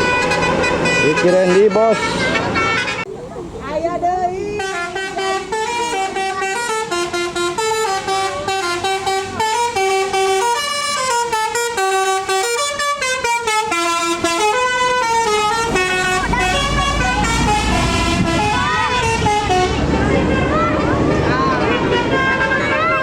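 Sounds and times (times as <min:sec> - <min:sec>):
multi-tone bus horn melody: 0:00.0 - 0:03.1, 0:04.4 - 0:23.0
low engine rumble: 0:02.0 - 0:23.0.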